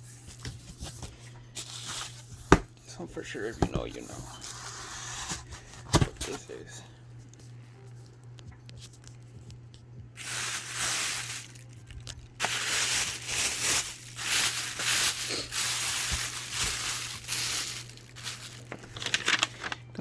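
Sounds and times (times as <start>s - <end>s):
paper wrapping crinkling and tearing: 0.3s - 2.4s, 3.2s - 6.6s, 10.2s - 20.0s.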